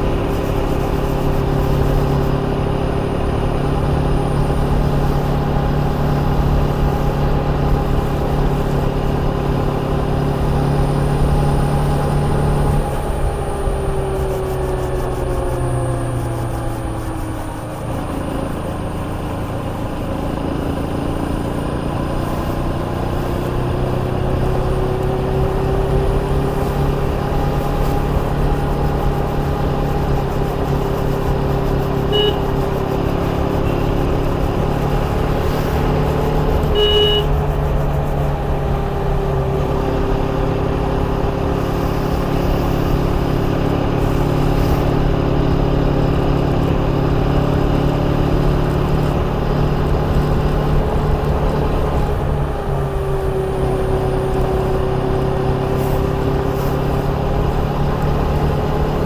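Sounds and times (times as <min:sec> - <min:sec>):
motorcycle engine running: 0:00.0 - 0:59.0
horn beeping: 0:32.0 - 0:34.3, 0:36.3 - 0:37.5.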